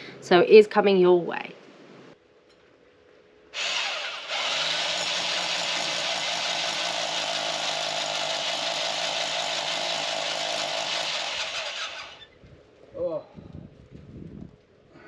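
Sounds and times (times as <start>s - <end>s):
power drill boring a hole: 3.6s - 12.3s.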